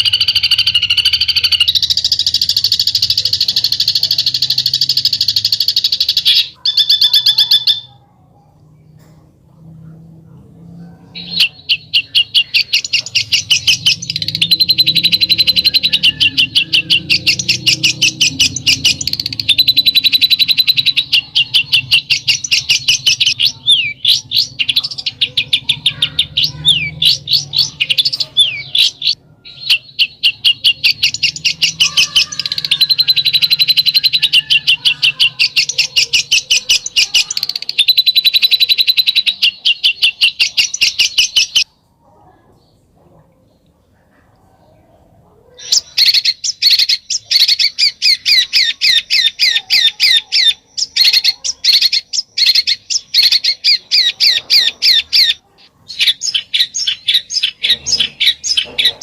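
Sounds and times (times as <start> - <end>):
songbird chattering: 0.0 - 9.2, 10.9 - 42.3, 45.4 - 59.0
sweeping bird notes: 11.2 - 41.6.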